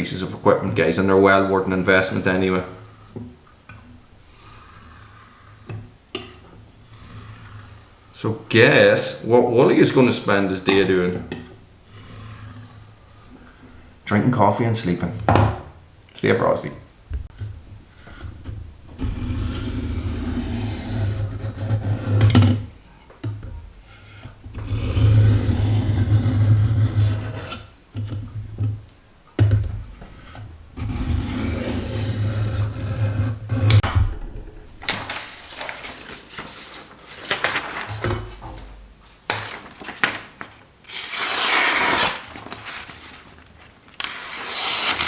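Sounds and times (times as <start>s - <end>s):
knocks: 33.7s - 35.2s.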